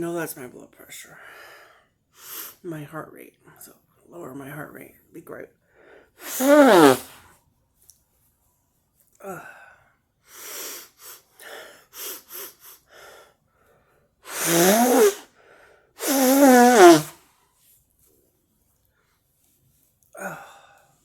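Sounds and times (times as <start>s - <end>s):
woman sneezing: 6.2s - 7.2s, 14.3s - 15.2s, 16.0s - 17.1s
woman snuffling nose: 6.2s - 7.2s, 14.3s - 15.3s, 16.0s - 17.2s.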